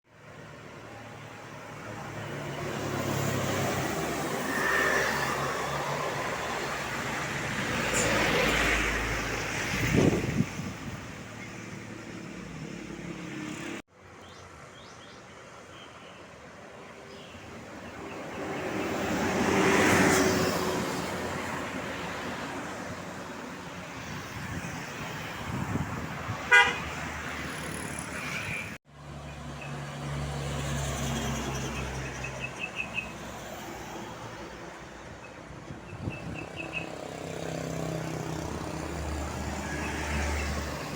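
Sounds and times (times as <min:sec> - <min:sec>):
road traffic: 0:00.0 - 0:40.9
buses driving past: 0:00.1 - 0:40.9
bus horns tooting: 0:26.5 - 0:27.0.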